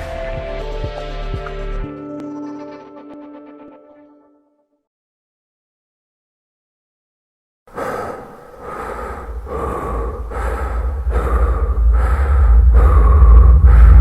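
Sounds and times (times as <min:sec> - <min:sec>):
heavy human breathing: 0:07.7 - 0:14.0
deep rumble: 0:07.8 - 0:14.0.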